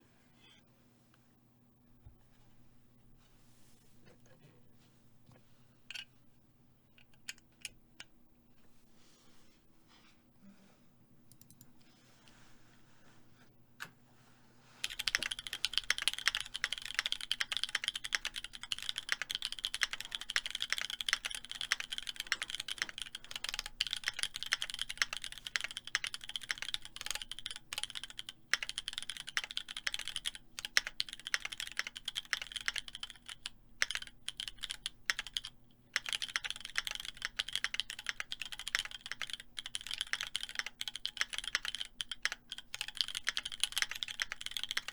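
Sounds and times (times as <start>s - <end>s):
mechanical keyboard typing: 11.3s - 11.7s, 14.8s - 44.9s.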